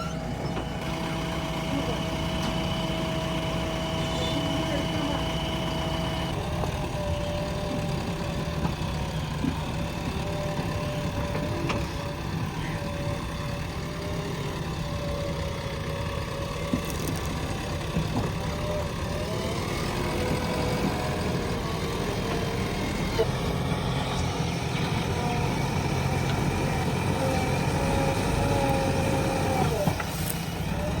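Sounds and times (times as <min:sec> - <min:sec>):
diesel engine running: 0:00.0 - 0:31.0.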